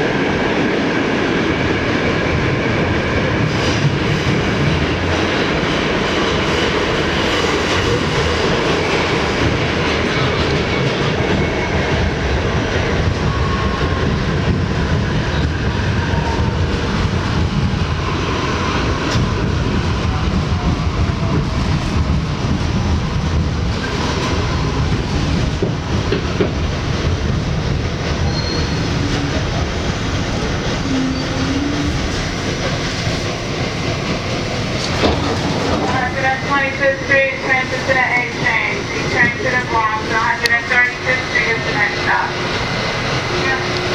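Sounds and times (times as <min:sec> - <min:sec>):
subway train wheels rumbling on rail: 0:00.0 - 0:43.9
clickety-clack over rail joints: 0:01.5 - 0:43.9
faint wheel squeal: 0:28.2 - 0:29.6.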